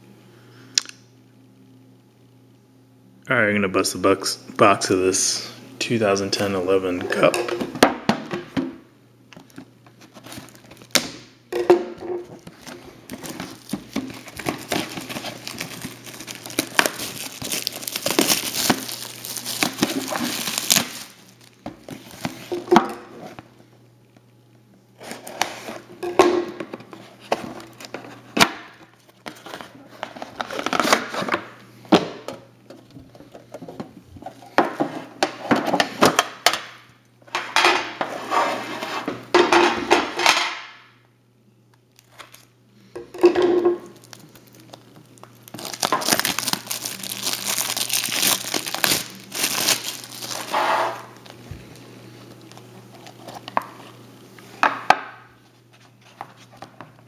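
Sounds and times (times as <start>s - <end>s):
packaging crinkling and tearing: 9.5s - 11.2s, 12.4s - 22.5s, 27.0s - 31.4s, 42.0s - 42.5s, 43.8s - 51.4s, 52.3s - 53.7s.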